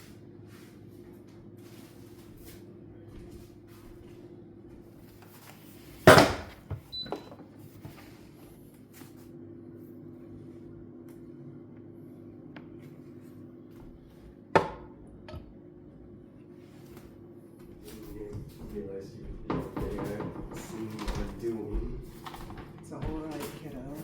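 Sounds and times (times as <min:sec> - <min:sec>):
steady low hum: 0:00.0 - 0:24.0
sharp knocks: 0:19.5 - 0:21.4.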